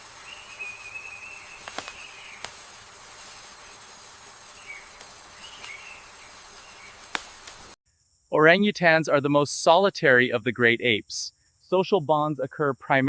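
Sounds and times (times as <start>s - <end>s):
wavering chirps: 0.0s - 7.4s
insects hissing: 0.0s - 13.0s.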